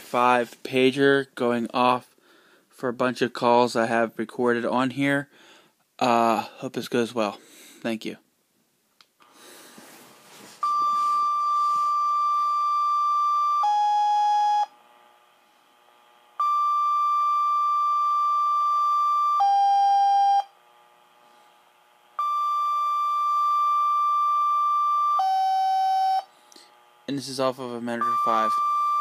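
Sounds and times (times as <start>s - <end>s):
pager two-tone alert tones: 10.6s - 14.7s, 22.2s - 26.3s, 28.0s - 29.0s.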